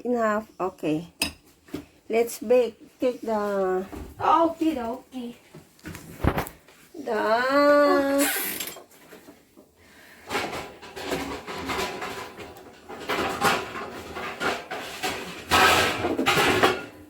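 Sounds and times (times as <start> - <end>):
kitchenware clattering: 1.1 - 1.6, 10.2 - 17.0.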